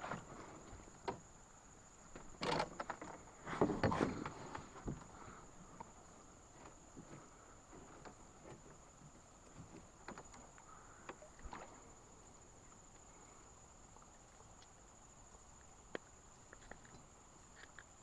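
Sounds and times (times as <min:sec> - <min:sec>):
faint clicks and knocks: 0:06.6 - 0:11.8.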